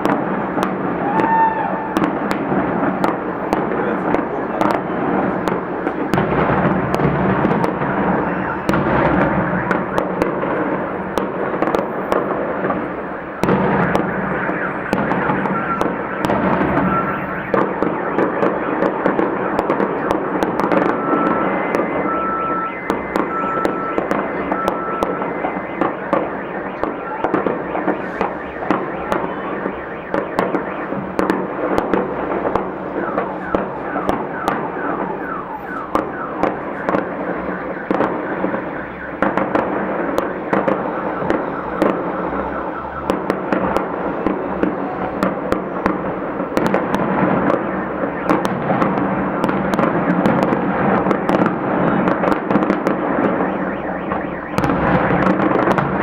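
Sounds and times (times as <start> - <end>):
fireworks bursts and crackling: 0.0 - 56.0
high tone beeping: 20.9 - 25.6.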